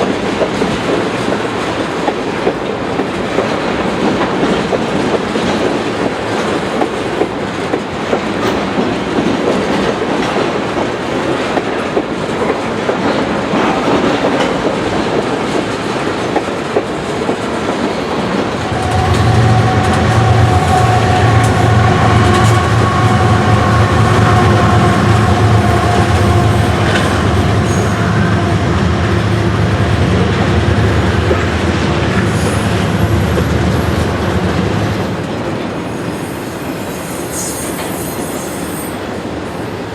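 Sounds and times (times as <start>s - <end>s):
train wheels clicking over rail joints: 0.0s - 35.8s
diesel locomotive engine drone: 12.0s - 36.6s
steady whining tones: 18.4s - 34.2s.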